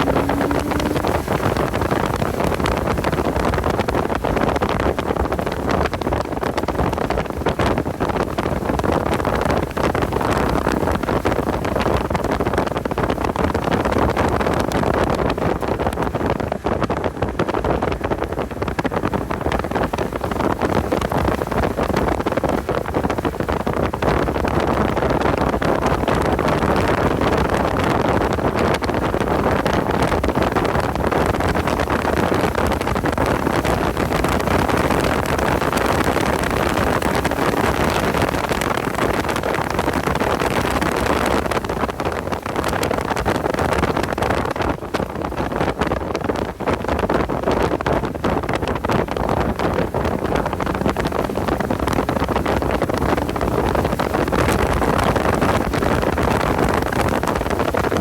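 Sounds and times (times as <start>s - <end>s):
car engine running hard: 0.0s - 9.2s, 48.0s - 58.0s
wind noise on microphone: 0.0s - 58.0s.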